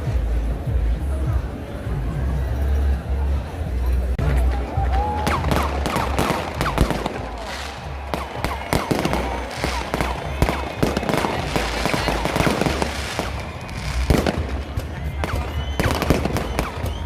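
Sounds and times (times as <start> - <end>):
fireworks bangs and crackles: 5.2 - 17.0
fireworks whistles falling in pitch: 5.3 - 17.0.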